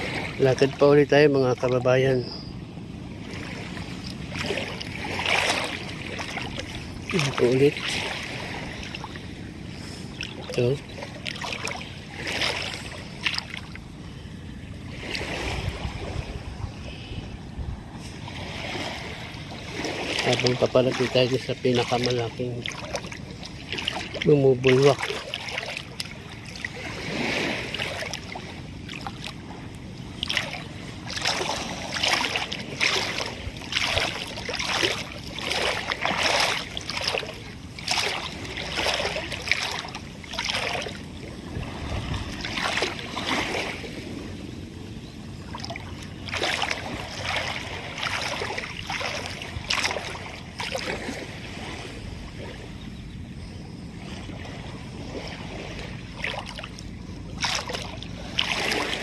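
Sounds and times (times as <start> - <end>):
water washing at shore: 0.0 - 53.0, 53.7 - 59.0
wind on microphone: 2.2 - 37.0, 37.8 - 56.1
short splashing or crunching: 4.0 - 9.1, 10.2 - 13.8, 19.7 - 29.4, 30.2 - 41.0, 57.4 - 59.0.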